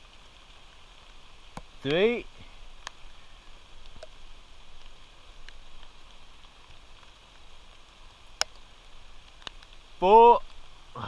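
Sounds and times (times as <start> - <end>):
light rain hissing: 0.0 - 11.0
faint ticks: 1.0 - 9.8.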